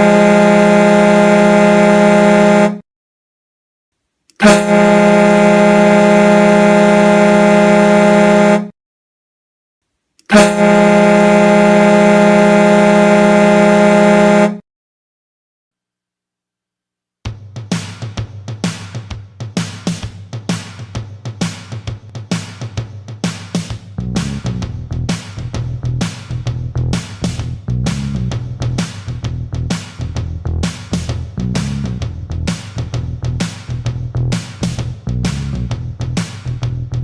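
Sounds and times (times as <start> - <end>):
hockey goal horn blasts: 0.0 - 2.8, 4.4 - 8.7, 10.3 - 14.6.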